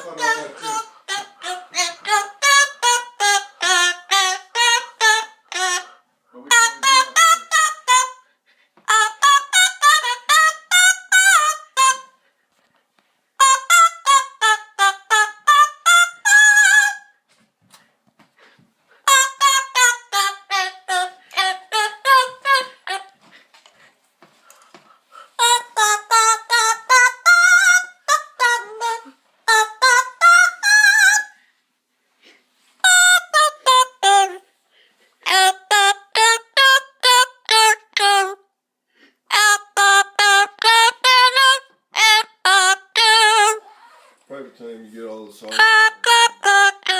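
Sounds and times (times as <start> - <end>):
parrot singing: 0.0 - 5.9, 6.5 - 8.2, 19.1 - 23.1, 25.4 - 31.4, 35.3 - 38.4, 39.3 - 44.2, 45.4 - 46.9.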